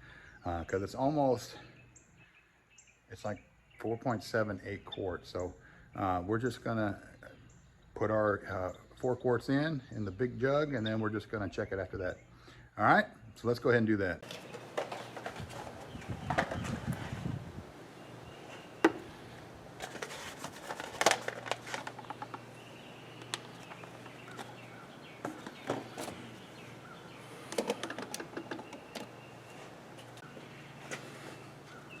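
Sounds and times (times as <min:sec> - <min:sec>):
clicks and clatter of tools: 0:27.5 - 0:29.1.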